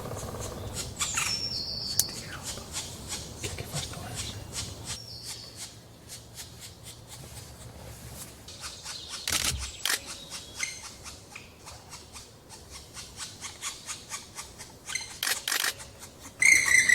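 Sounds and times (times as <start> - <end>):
high whistled bird call: 16.4 - 16.9.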